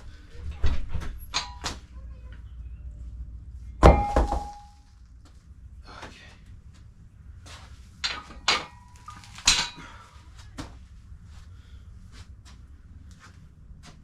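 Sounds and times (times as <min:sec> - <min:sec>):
sharp knocks: 0:03.8 - 0:04.8
metallic ring: 0:03.8 - 0:04.9.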